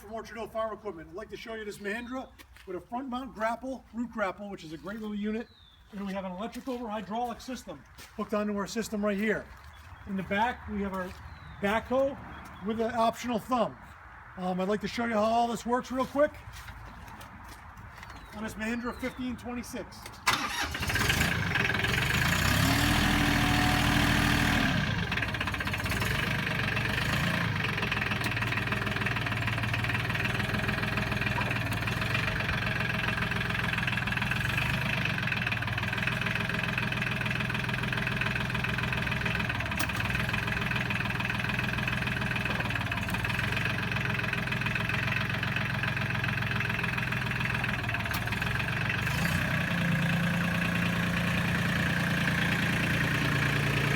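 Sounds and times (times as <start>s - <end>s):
tractor diesel engine idling: 20.2s - 53.9s.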